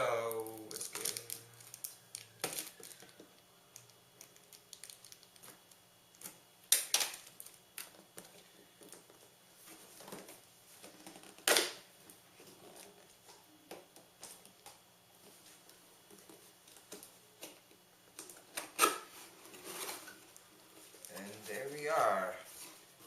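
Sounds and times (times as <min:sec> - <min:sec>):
cardboard scraping: 0:19.1 - 0:20.2.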